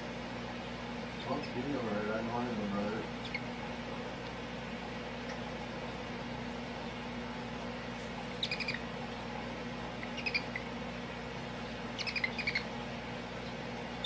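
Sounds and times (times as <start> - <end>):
steady hum: 0.0 - 14.0
small animal chirping: 3.2 - 3.5, 8.4 - 8.9, 10.0 - 10.8, 11.9 - 12.7.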